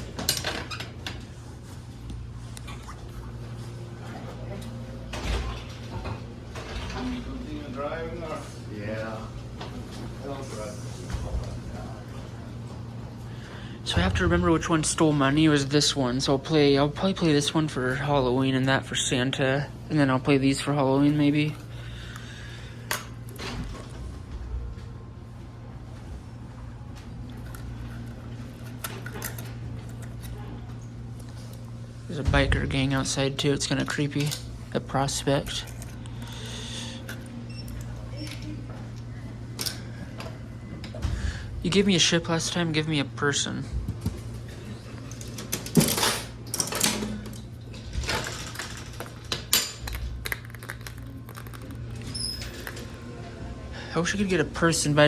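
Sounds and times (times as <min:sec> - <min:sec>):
steady low hum: 0:00.0 - 0:55.0
vending mechanism clicks and rattles: 0:45.0 - 0:53.0.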